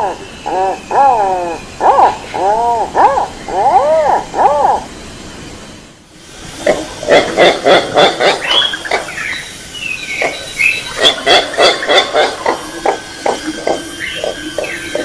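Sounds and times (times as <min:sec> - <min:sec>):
bird harsh repeated calls: 0:00.0 - 0:04.9, 0:06.7 - 0:15.0
bird whistled gliding notes: 0:08.4 - 0:15.0.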